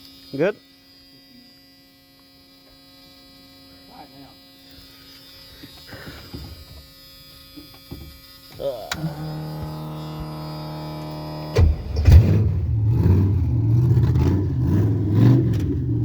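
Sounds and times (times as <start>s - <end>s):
electrical hum: 6.6s - 16.0s
car engine starting and idling: 8.9s - 16.0s.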